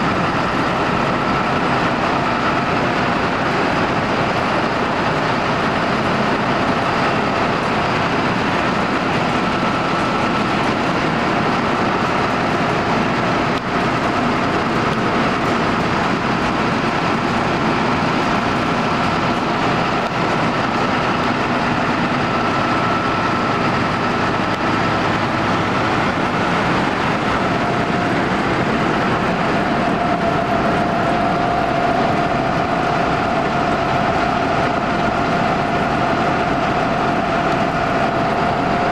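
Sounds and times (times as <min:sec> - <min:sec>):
combine harvester mechanical drone: 0:00.0 - 0:38.9.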